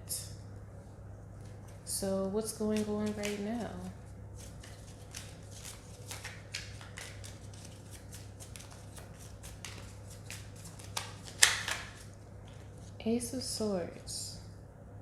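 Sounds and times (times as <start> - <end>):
cards being shuffled: 2.6 - 13.0
card snapping: 4.6 - 12.0.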